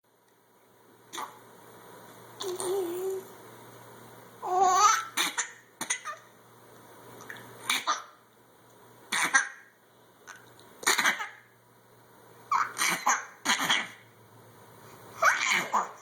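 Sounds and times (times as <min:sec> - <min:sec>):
child coughing: 0:09.1 - 0:09.6, 0:10.8 - 0:11.4, 0:12.6 - 0:14.0.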